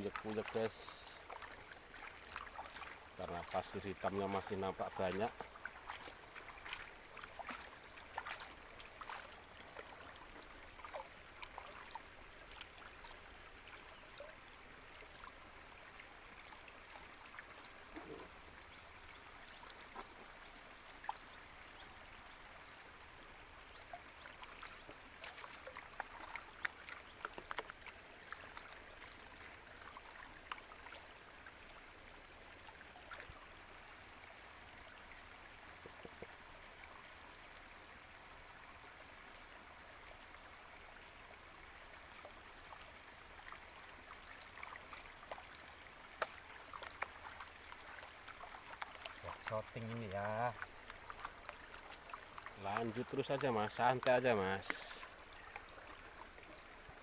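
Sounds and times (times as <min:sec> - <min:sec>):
water sloshing in a pan: 0:00.0 - 0:21.9, 0:23.7 - 0:31.8, 0:41.8 - 0:57.0.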